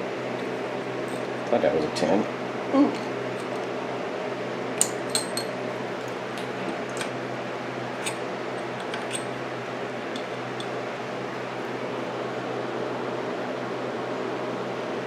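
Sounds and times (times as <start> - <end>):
steady background hum: 0.0 - 15.0
wrench and steel parts clinking: 4.8 - 7.1, 8.0 - 9.3, 10.1 - 10.8.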